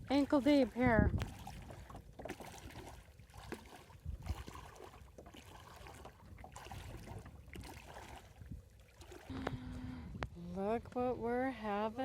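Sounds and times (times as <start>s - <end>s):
wind rumble on microphone: 0.0s - 2.1s, 3.9s - 4.8s, 6.1s - 12.0s
shallow water splashing and lapping: 0.0s - 10.2s.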